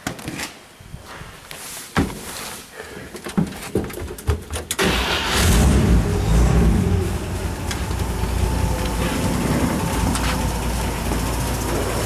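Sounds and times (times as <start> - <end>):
car engine idling: 4.8 - 12.0.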